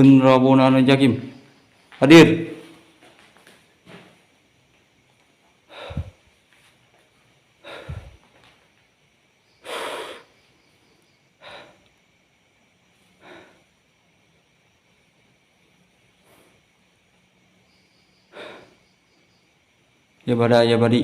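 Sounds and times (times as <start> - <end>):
man breathing heavily: 5.5 - 8.8, 9.5 - 10.5, 11.1 - 14.2, 16.0 - 17.0, 18.2 - 19.0
breath thumping microphone: 5.6 - 6.7, 7.6 - 8.5.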